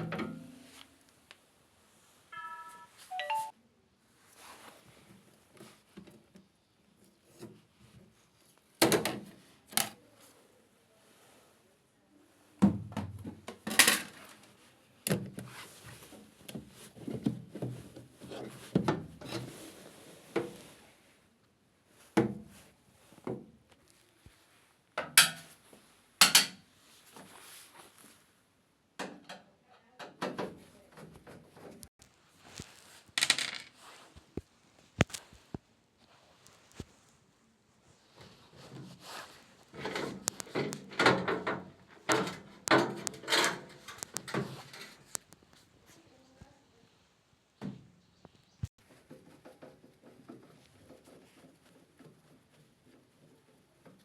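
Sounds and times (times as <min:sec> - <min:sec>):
knocks and clatter of tools: 0:39.8 - 0:45.2.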